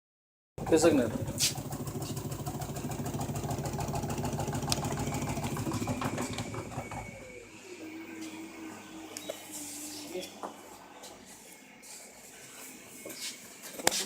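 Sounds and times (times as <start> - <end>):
washing machine motor rattling: 0.6 - 7.4.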